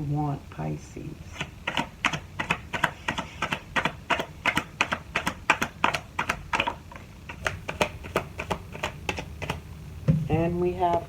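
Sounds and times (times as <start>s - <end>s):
cards being shuffled: 1.6s - 9.6s.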